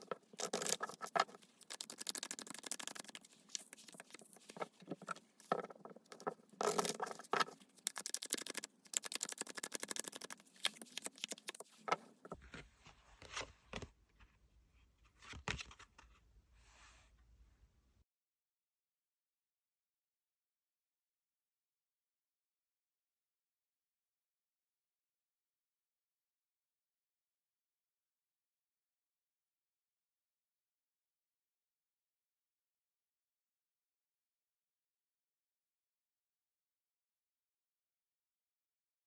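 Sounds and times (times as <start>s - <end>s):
cards being shuffled: 0.0s - 12.0s.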